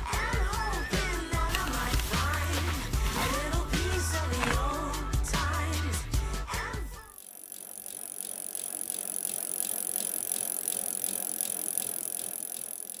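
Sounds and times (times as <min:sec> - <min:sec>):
mountain bike rolling on trail: 0:01.4 - 0:04.8, 0:07.1 - 0:13.0
freewheel ticking: 0:07.0 - 0:13.0.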